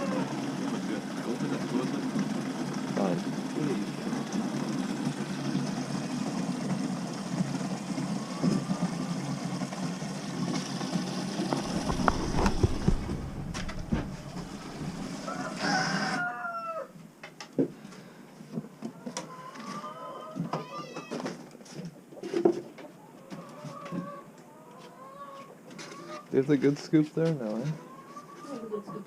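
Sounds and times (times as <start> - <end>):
mechanical drone: 0.0 - 15.3
knocks and clunks: 10.5 - 15.2
rooster crowing: 11.8 - 17.0.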